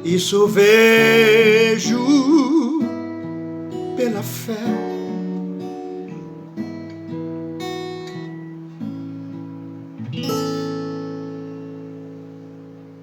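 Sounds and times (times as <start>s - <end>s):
acoustic guitar strummed chords: 0.0s - 13.0s.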